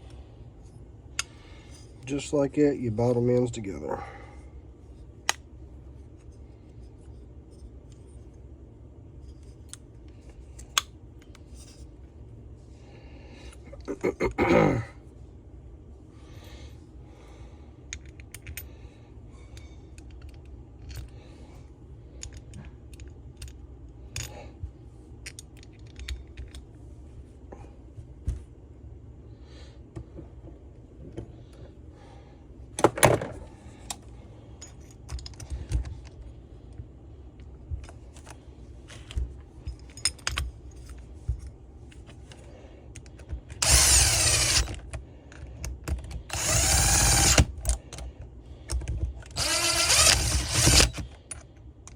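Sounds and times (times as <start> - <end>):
metal parts and tools clattering: 32.8 - 36.2, 38.2 - 41.2
power drill running: 43.6 - 44.8, 46.3 - 47.5, 49.3 - 51.0.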